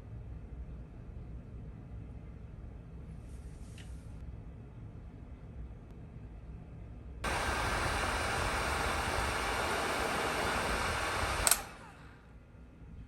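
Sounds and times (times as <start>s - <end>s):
electric air blower blowing: 7.2s - 12.2s
blower switch click: 7.3s - 12.2s.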